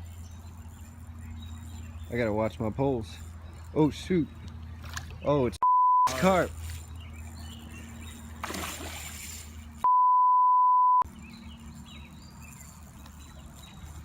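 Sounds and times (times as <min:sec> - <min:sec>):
riverside ambience: 0:00.0 - 0:14.0
censor beep tone: 0:05.6 - 0:06.1, 0:09.8 - 0:11.1.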